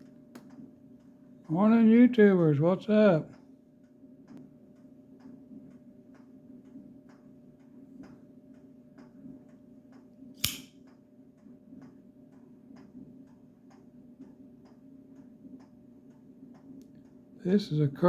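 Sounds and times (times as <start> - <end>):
loud sharp click: 10.4 - 10.7.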